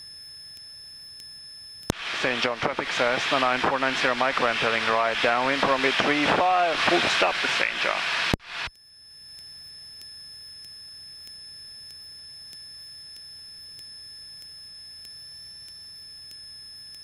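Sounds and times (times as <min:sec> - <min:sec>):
high-pitched electrical whine: 0:00.0 - 0:17.0
faint regular ticking: 0:00.4 - 0:02.0, 0:09.3 - 0:17.0.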